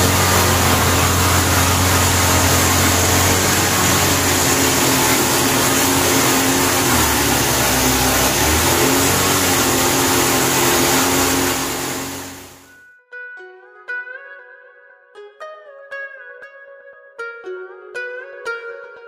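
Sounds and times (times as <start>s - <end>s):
excavator engine running: 0.0s - 12.7s.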